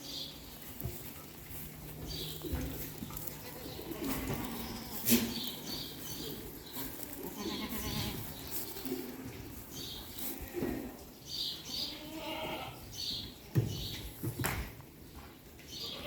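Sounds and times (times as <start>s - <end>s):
goats bleating: 3.3s - 5.5s, 7.0s - 8.4s, 11.6s - 12.8s.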